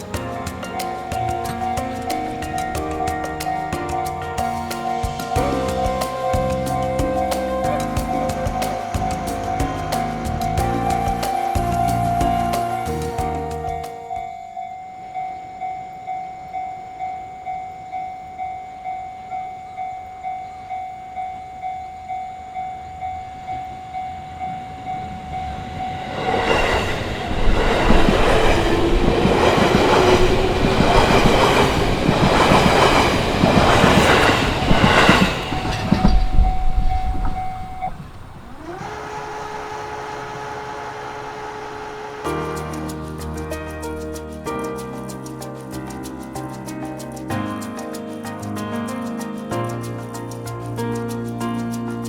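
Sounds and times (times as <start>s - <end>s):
level-crossing warning bell: 0.0s - 42.9s
train wheels clacking over rail joints: 26.0s - 39.8s.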